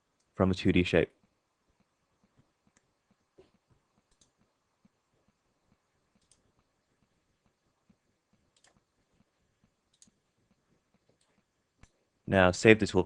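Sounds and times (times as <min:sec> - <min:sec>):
computer mouse clicks: 0:01.2 - 0:12.0.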